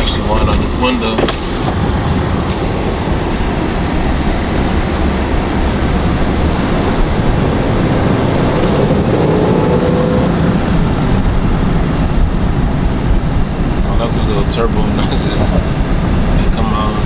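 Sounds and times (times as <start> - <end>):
car engine low rumble: 0.0 - 17.0
road and wind noise in car: 0.0 - 17.0.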